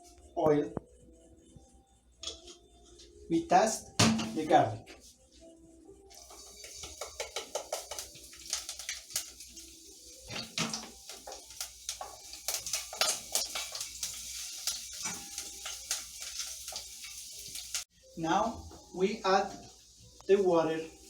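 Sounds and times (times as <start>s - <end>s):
garlic frying in oil: 6.1s - 21.0s.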